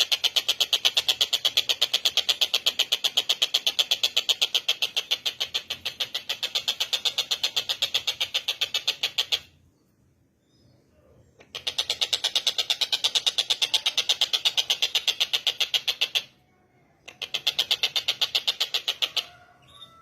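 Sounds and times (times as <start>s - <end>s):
bird rattling trill: 0.0s - 9.6s, 11.4s - 16.4s, 17.0s - 20.0s.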